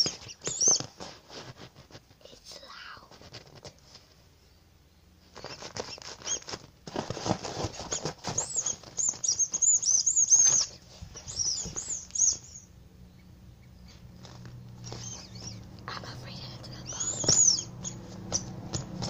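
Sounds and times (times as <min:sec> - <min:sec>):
high-pitched squeaky chirps: 0:00.0 - 0:00.9, 0:07.9 - 0:14.1, 0:14.8 - 0:19.0
faint room hum: 0:00.0 - 0:19.0
fingernail tapping and scratching: 0:17.0 - 0:19.0.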